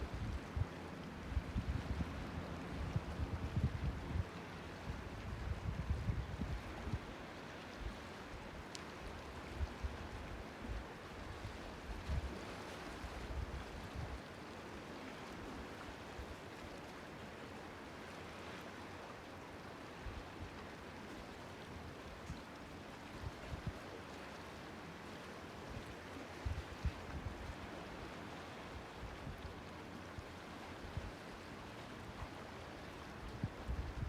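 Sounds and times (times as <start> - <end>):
wind buffeting microphone: 2.8 - 7.0, 33.3 - 34.0.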